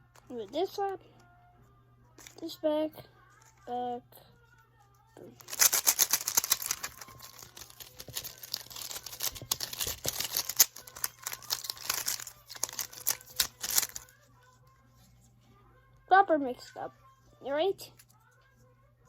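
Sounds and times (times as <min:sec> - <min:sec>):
puzzle cube twisting clicks: 0:05.4 - 0:14.1.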